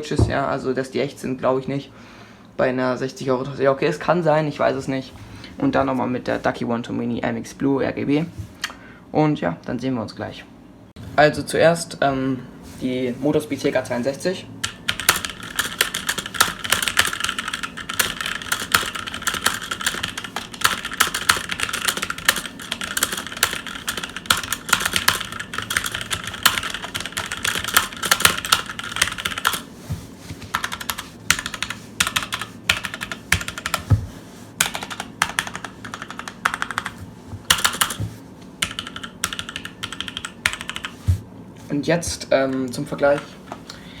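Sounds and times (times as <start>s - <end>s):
mechanical keyboard typing: 14.6s - 29.6s, 30.5s - 33.8s, 34.6s - 38.0s, 38.6s - 41.0s.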